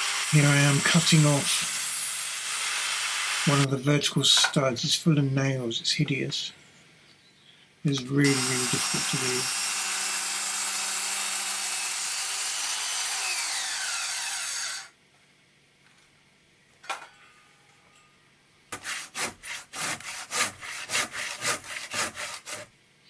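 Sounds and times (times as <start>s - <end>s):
power tool winding down: 8.2s - 14.9s
hand saw rasping through wood: 8.3s - 14.8s, 18.7s - 22.7s.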